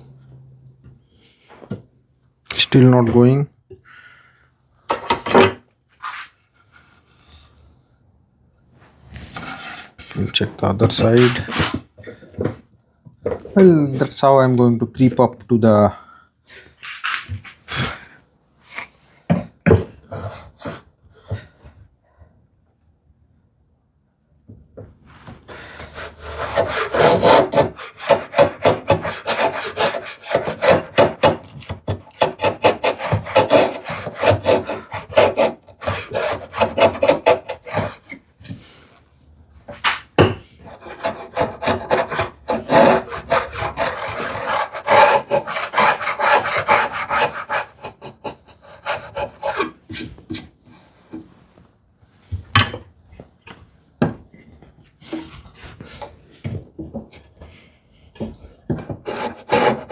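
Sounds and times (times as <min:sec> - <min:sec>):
router plane scraping wood: 0:09.2 - 0:11.9, 0:25.8 - 0:38.2, 0:40.6 - 0:50.5, 0:58.9 - 0:59.9.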